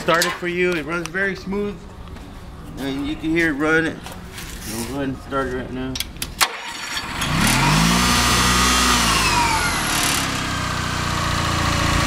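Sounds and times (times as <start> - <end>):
generator engine running: 6.4 - 12.0.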